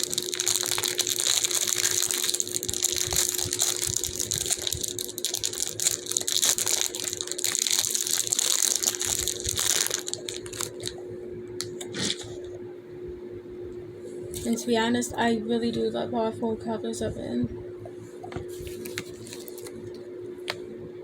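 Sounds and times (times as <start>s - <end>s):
plastic bag crinkling: 0.0s - 11.0s, 18.5s - 19.9s.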